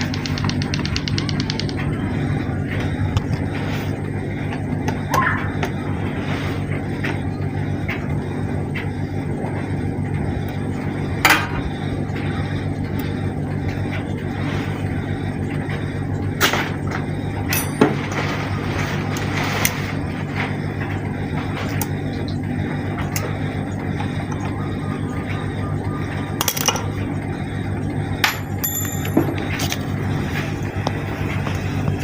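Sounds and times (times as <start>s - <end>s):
low mechanical hum: 0.0s - 32.0s.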